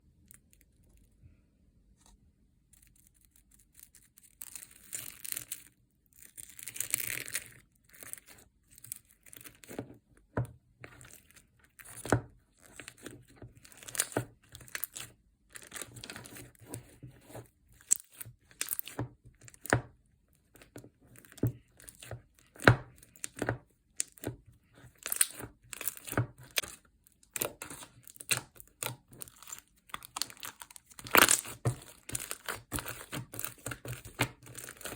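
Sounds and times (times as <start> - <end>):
slime squished by hand: 24.9 - 34.9.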